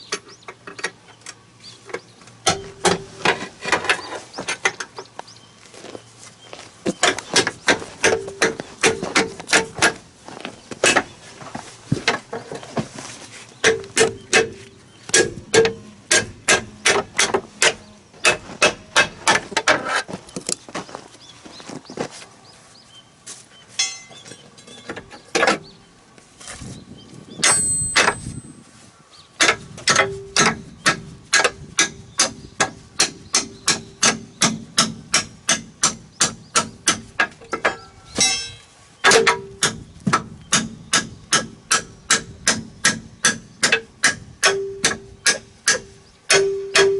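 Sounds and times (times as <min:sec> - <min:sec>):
hammer blows on metal: 0:37.7 - 0:46.9.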